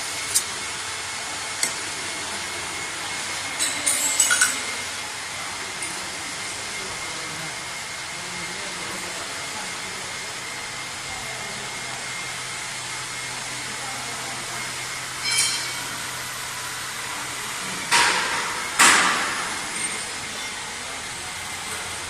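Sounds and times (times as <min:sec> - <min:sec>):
bright clink: 0:15.2 - 0:16.0.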